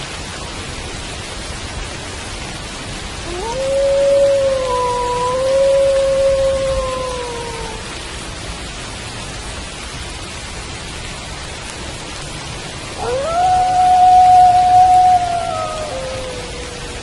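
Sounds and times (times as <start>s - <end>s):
steady rain falling: 0.0s - 17.0s
wolf howling: 3.2s - 7.9s, 13.0s - 17.0s.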